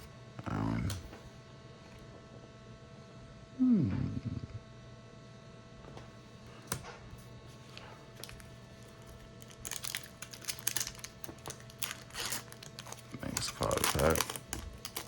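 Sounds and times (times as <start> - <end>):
faint steady hum: 0.0 - 15.0
trading cards clicking and rustling: 7.6 - 15.0.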